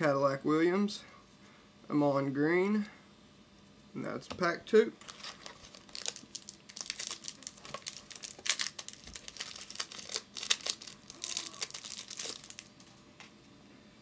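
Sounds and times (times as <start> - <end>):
foil wrapper tearing and crinkling: 5.0 - 12.9.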